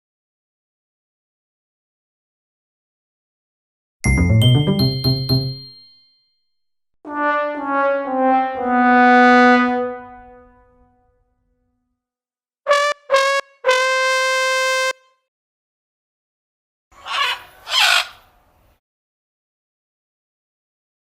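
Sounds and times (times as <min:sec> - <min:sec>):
sad trombone notes: 0:07.1 - 0:10.8.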